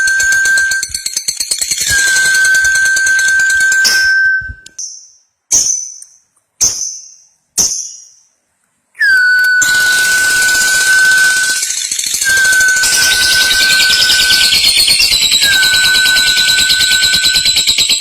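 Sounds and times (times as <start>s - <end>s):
steady high whistle-like tone: 0.0s - 1.2s, 1.8s - 4.8s, 9.0s - 18.0s
sharp high bird chirps: 0.0s - 8.3s, 9.0s - 18.0s.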